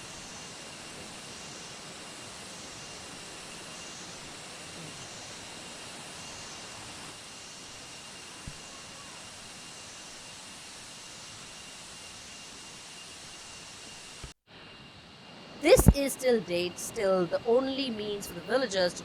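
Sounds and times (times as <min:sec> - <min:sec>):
outdoor hiss: 0:00.0 - 0:19.0
faint high tone: 0:15.6 - 0:19.0.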